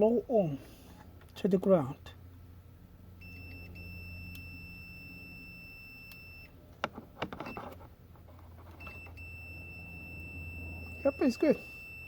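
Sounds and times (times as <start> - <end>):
multimeter high beep: 3.2 - 6.5, 8.8 - 12.0.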